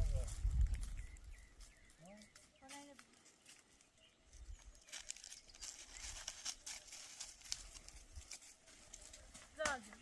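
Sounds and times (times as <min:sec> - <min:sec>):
wind rumble on microphone: 0:00.0 - 0:01.5.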